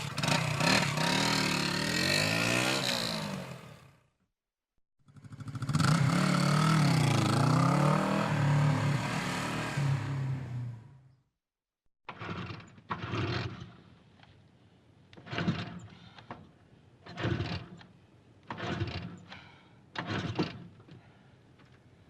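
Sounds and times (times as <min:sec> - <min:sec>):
motorcycle engine revving in bursts: 0:00.0 - 0:04.0, 0:05.0 - 0:10.9.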